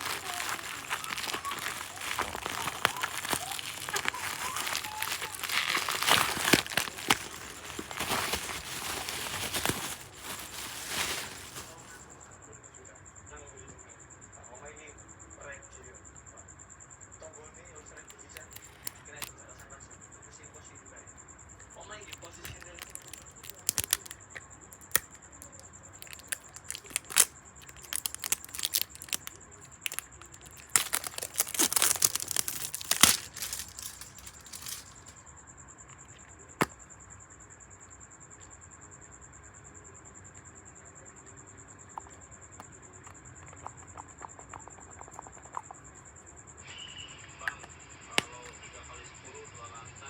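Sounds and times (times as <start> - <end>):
packaging crinkling and tearing: 0.0 - 12.1, 18.1 - 19.3, 22.0 - 35.2.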